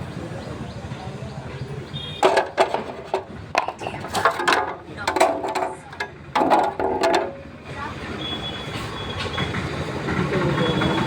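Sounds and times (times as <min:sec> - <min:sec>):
sharp knocks and clatter: 0:02.2 - 0:07.5.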